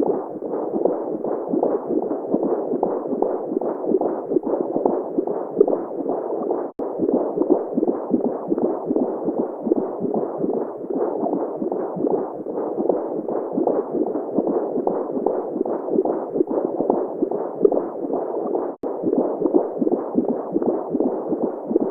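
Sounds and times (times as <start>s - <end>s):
rhythmic heartbeat pulse: 0.0s - 21.9s.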